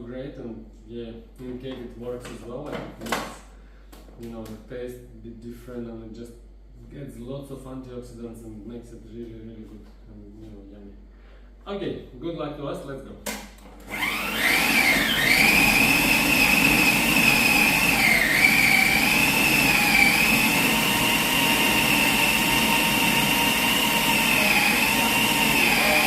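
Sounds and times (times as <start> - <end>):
blender motor whining: 13.9 - 26.0.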